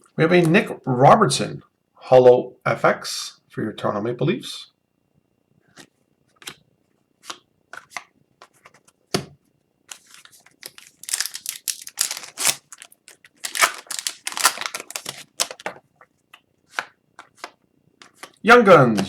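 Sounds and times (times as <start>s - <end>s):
card pack wrapper tearing: 9.9s - 15.8s.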